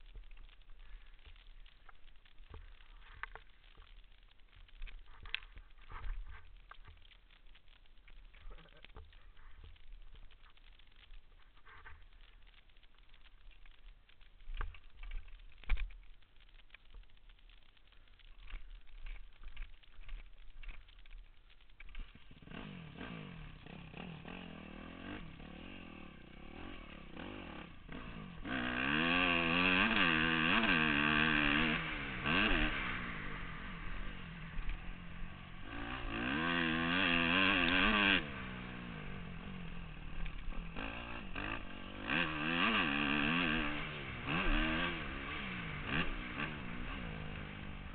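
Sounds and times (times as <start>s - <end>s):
motorcycle engine revving: 22.0s - 47.9s.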